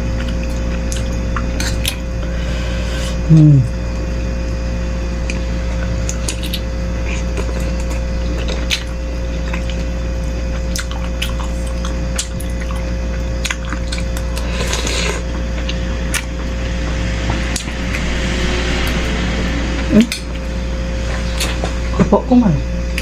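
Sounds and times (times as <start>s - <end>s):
steady hum: 0.0s - 23.0s
wet chewing and slurping: 5.3s - 19.0s.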